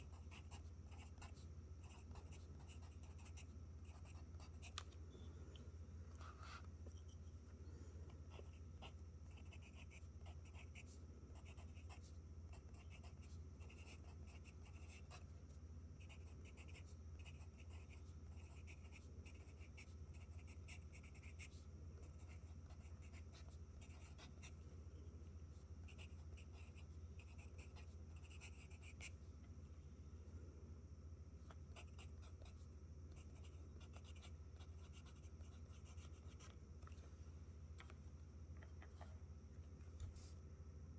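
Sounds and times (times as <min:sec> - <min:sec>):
pencil writing on paper: 0:00.0 - 0:04.8, 0:08.1 - 0:15.3, 0:16.0 - 0:24.6, 0:25.8 - 0:29.1, 0:31.6 - 0:36.6
faint low hum: 0:00.0 - 0:40.9.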